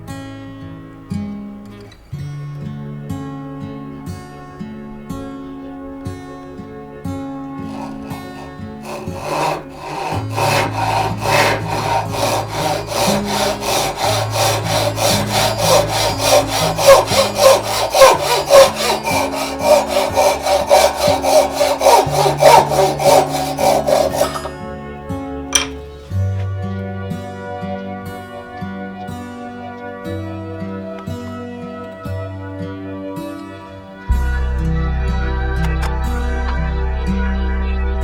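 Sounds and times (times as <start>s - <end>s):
hand saw cutting wood: 7.6s - 24.7s.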